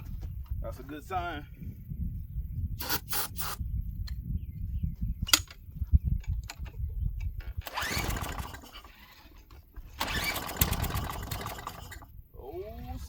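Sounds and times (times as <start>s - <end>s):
engine turning over: 7.6s - 12.1s
rasping starter rope pull: 7.6s - 12.1s.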